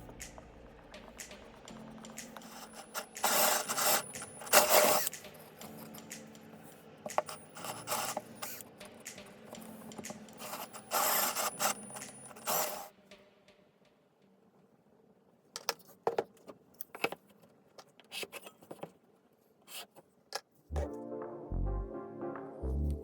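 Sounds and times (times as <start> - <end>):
scraping on wood: 10.0 - 12.9.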